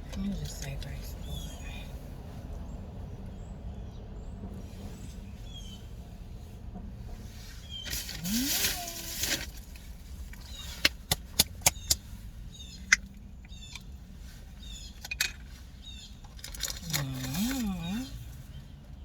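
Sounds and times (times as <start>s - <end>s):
small birds chirping: 0.1s - 6.6s, 7.4s - 9.1s, 9.8s - 19.0s
brief rustle: 7.3s - 12.2s
sharp clicks: 10.3s - 12.1s.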